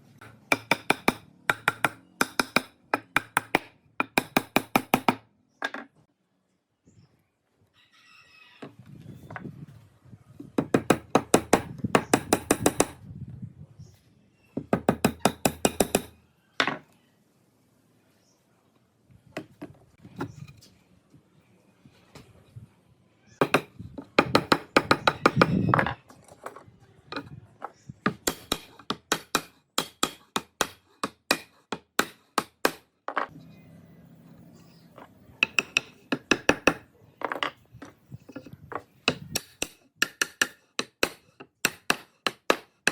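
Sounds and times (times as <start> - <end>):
hammering on wood: 0.2 - 5.2, 10.6 - 13.0, 14.6 - 16.8, 23.4 - 25.5, 28.1 - 32.8, 35.4 - 36.8, 39.0 - 42.9.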